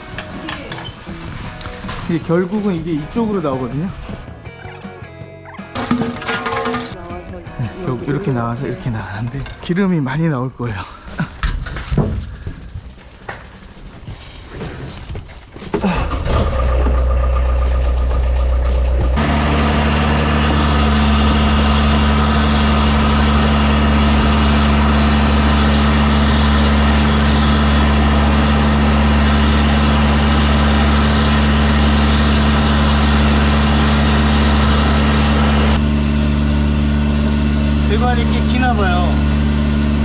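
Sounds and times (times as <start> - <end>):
pump engine hum: 5.6 - 7.0, 15.8 - 40.0.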